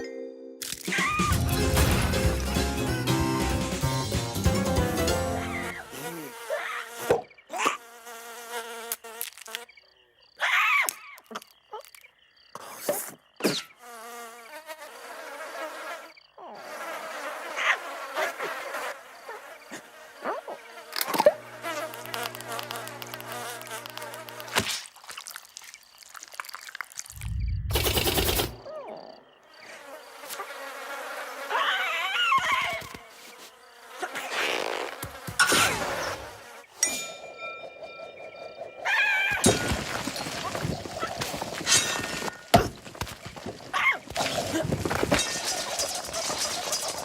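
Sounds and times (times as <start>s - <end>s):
cartoon buzzing insect: 5.3s - 9.7s, 13.6s - 24.6s, 29.6s - 36.8s
low hum: 27.2s - 28.6s.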